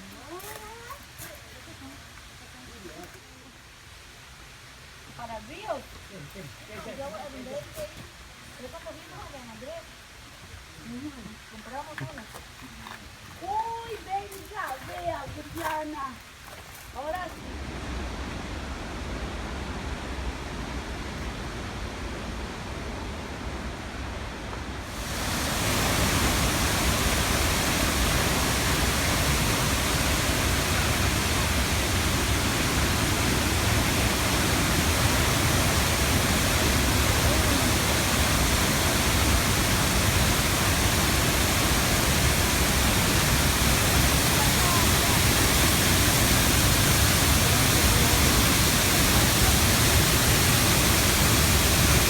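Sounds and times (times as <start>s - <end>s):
waterfall rushing: 17.0s - 52.0s.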